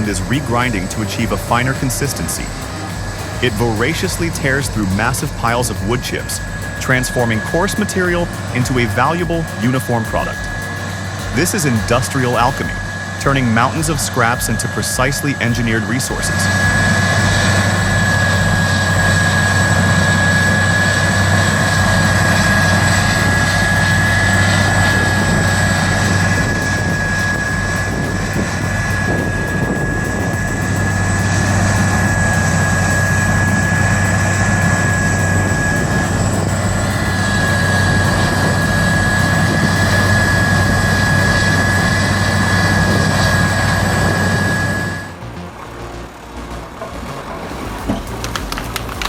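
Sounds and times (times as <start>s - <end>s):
high whine: 0.0s - 49.0s
wood grinder engine drone: 0.0s - 49.0s
wood chips grinding: 45.8s - 49.0s.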